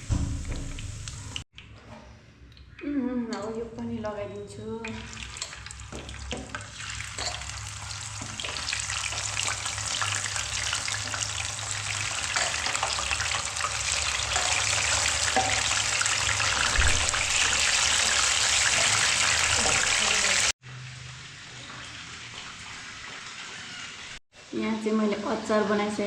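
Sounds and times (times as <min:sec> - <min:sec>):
fish sizzling in hot oil: 0:05.1 - 0:24.2.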